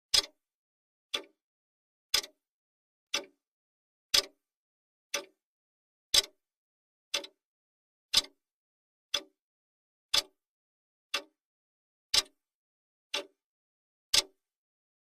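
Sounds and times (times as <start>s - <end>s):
clock ticking: 0.1s - 0.4s, 1.1s - 1.4s, 2.1s - 2.4s, 3.1s - 3.4s, 4.1s - 4.4s, 5.1s - 5.4s, 6.1s - 6.4s, 7.1s - 7.4s, 8.1s - 8.4s, 9.1s - 9.4s, 10.1s - 10.4s, 11.1s - 11.4s, 12.1s - 12.4s, 14.1s - 14.4s.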